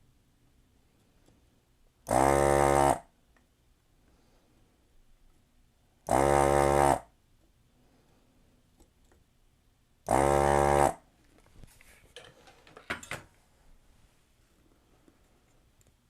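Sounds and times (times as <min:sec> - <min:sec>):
desoldering vacuum pump buzzing: 0:02.1 - 0:03.0, 0:06.1 - 0:07.1, 0:10.1 - 0:11.0.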